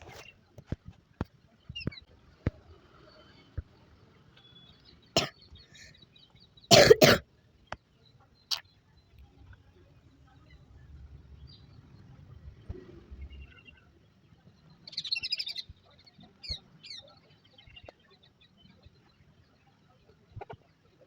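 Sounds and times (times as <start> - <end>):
person coughing: 6.7 - 7.2.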